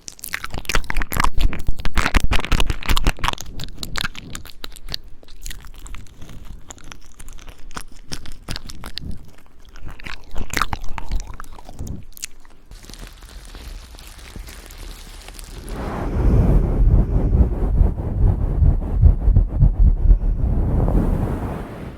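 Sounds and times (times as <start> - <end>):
wet mouth clicks and crunches: 0.0 - 15.7.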